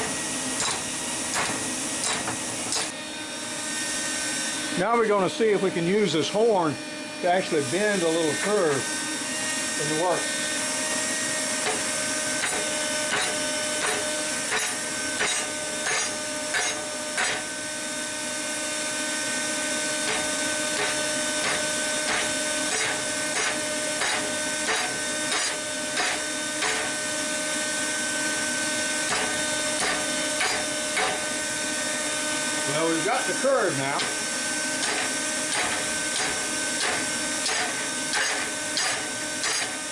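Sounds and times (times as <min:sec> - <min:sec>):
hammer striking steel on anvil: 0:00.0 - 0:03.0, 0:11.6 - 0:17.5, 0:20.0 - 0:27.0, 0:29.1 - 0:31.4, 0:34.8 - 0:39.8.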